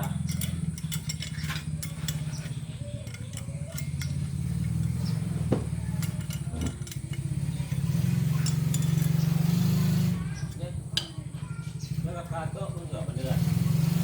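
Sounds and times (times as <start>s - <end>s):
engine running: 0.0s - 14.0s.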